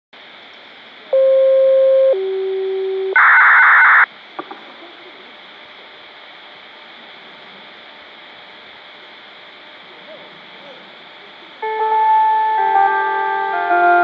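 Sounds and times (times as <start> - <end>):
radio static hiss: 0.2 - 12.7
signal tones: 1.1 - 4.1.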